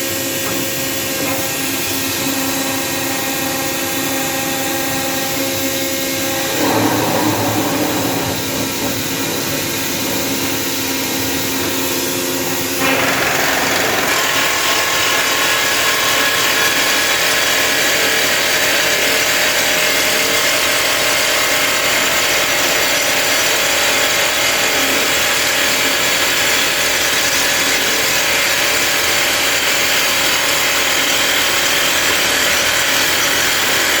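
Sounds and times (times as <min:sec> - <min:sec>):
drill rig humming: 0:01.4 - 0:17.0
harsh rock drilling: 0:01.5 - 0:34.0.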